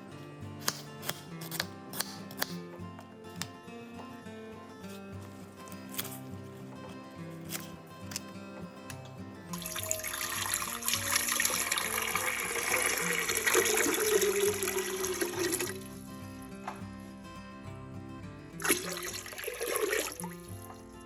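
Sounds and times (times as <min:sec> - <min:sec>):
background music: 0:00.0 - 0:21.0
water running from a tap: 0:09.6 - 0:16.4, 0:18.6 - 0:21.0.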